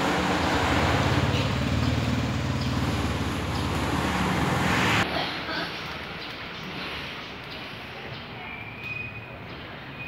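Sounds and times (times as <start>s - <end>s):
vehicle engine running: 0.0s - 5.0s
street traffic noise: 0.0s - 10.0s.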